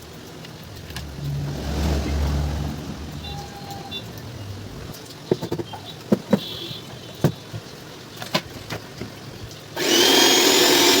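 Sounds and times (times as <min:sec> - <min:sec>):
mixer grinder motor whining: 0:09.8 - 0:11.0.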